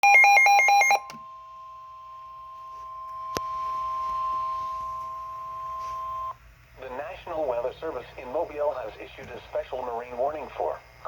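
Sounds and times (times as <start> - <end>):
steady high alarm tone: 0.0 - 6.4.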